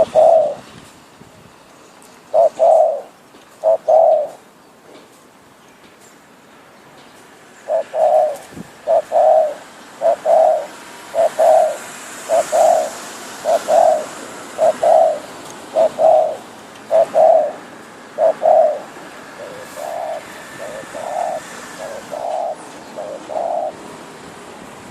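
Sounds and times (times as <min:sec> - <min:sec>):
dove cooing: 0:00.0 - 0:00.6, 0:02.3 - 0:04.4, 0:07.6 - 0:23.9.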